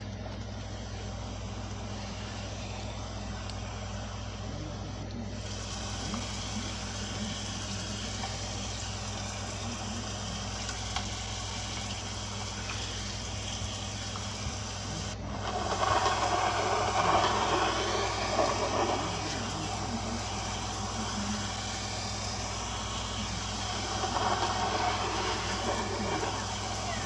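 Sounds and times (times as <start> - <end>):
low steady hum: 0.0 - 27.0
rain falling: 5.4 - 27.0.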